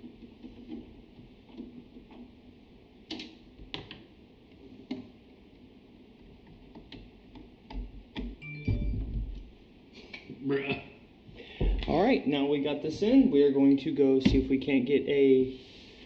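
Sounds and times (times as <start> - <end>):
computer parts clicking and knocking: 0.0 - 2.4, 6.4 - 9.5
heavy knocks and thump: 8.7 - 9.4, 11.6 - 11.9.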